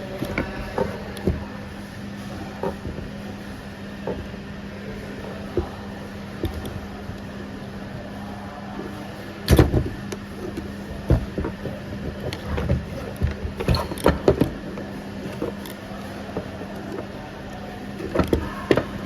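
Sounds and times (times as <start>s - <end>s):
steady low hum: 0.0s - 19.0s
knocks and clunks: 9.5s - 14.6s.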